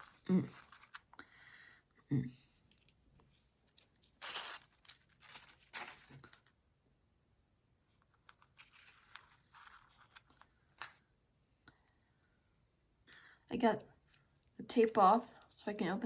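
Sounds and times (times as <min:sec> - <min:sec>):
plastic rustling: 0:02.7 - 0:06.6, 0:08.0 - 0:11.0
adhesive tape ripping: 0:04.0 - 0:06.2.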